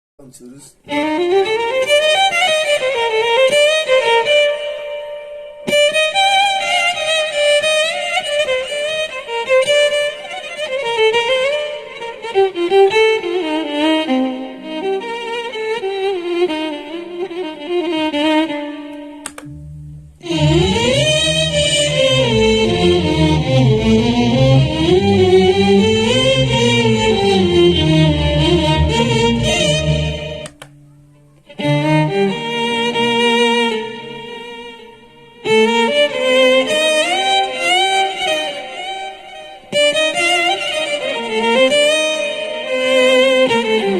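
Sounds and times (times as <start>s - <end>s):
violin with effects: 0.4s - 43.9s
click: 18.9s - 19.6s, 30.4s - 30.8s.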